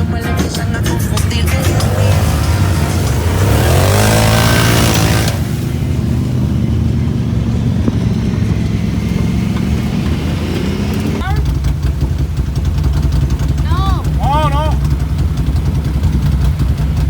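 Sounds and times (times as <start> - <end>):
atv engine revving: 0.0 - 17.0
rushing hiss: 1.3 - 6.5.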